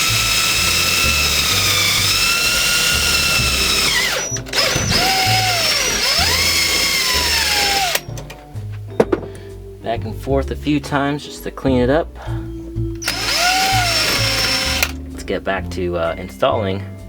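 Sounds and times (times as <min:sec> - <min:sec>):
electric drill whining: 0:00.0 - 0:08.1, 0:13.0 - 0:15.0.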